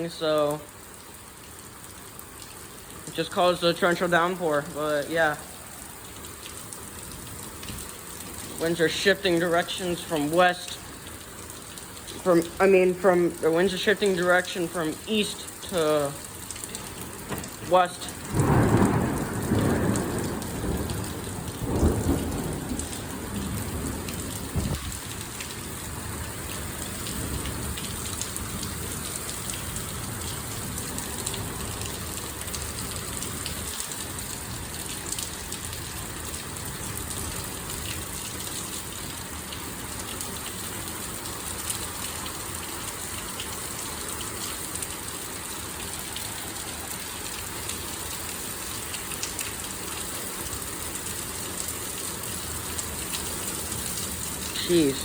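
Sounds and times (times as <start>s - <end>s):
heavy rain downpour: 0.0s - 55.0s
thunder rumbling: 17.4s - 25.2s.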